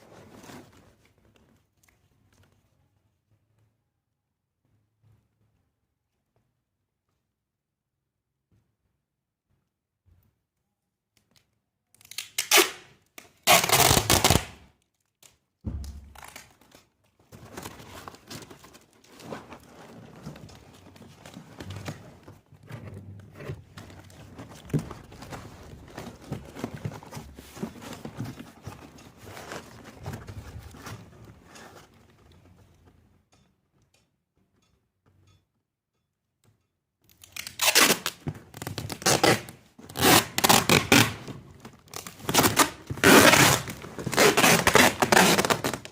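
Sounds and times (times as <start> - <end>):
packing material tearing: 12.0 - 15.2, 37.2 - 41.3, 41.9 - 45.9
packing material crinkling and rustling: 12.0 - 32.9, 37.2 - 45.9.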